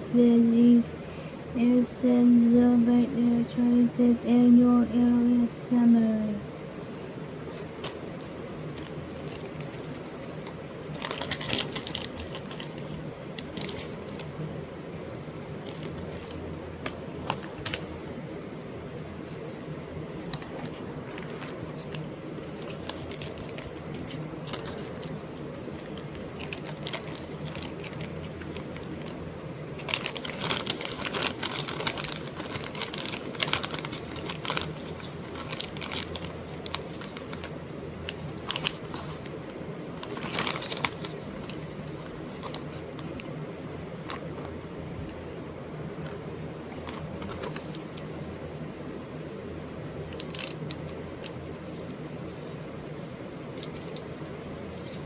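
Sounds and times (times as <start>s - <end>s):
steady low hum: 0.0s - 55.0s
clicks and crinkling: 7.5s - 18.1s, 20.2s - 43.4s, 46.0s - 48.1s, 50.1s - 52.6s.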